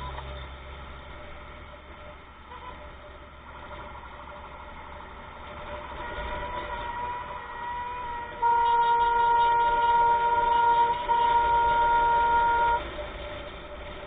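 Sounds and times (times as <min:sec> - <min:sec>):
faint steady horn tone: 0:02.4 - 0:03.4, 0:05.6 - 0:13.5
loud steady horn blast: 0:02.5 - 0:03.0, 0:05.8 - 0:13.1.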